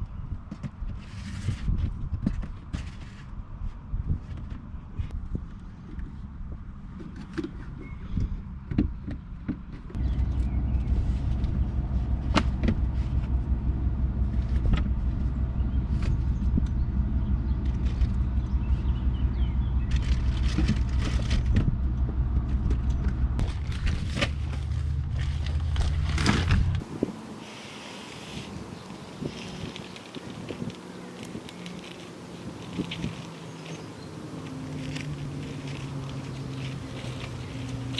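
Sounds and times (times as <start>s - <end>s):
car engine running: 10.0s - 37.9s.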